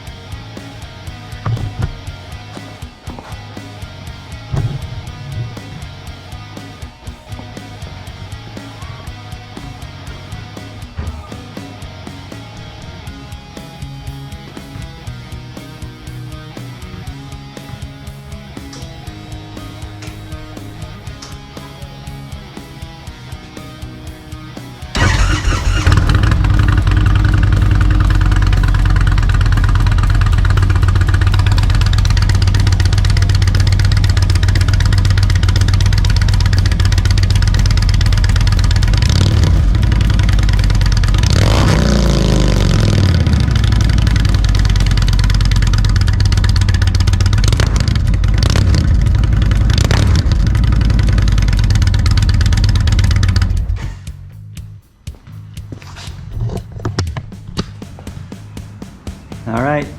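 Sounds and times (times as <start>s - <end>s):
motorcycle engine idling: 23.8s - 54.3s
motorcycle engine revving: 24.9s - 54.0s.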